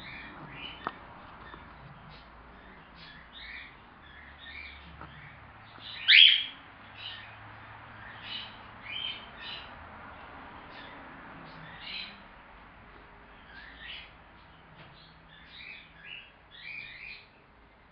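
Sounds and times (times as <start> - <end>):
cockatiel chirping: 5.8 - 6.6.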